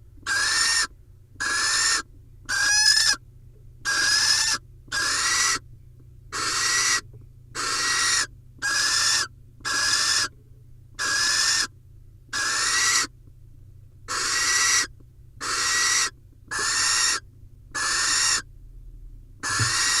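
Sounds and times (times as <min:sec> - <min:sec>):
barn owl hissing screeches: 0:00.3 - 0:03.2, 0:03.9 - 0:05.6, 0:06.4 - 0:07.0, 0:07.6 - 0:10.3, 0:11.0 - 0:11.7, 0:12.4 - 0:13.1, 0:14.1 - 0:17.2, 0:17.8 - 0:18.4, 0:19.4 - 0:20.0.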